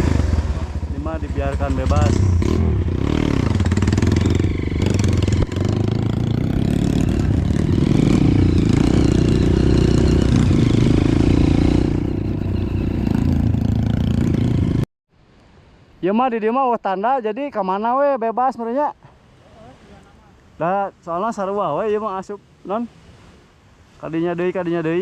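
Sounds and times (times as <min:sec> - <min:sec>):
motorcycle engine running: 0:00.0 - 0:14.8.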